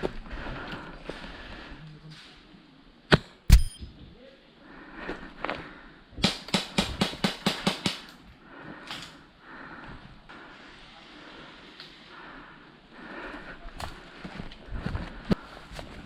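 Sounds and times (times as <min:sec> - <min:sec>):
airsoft rifle shots: 0:06.2 - 0:08.1.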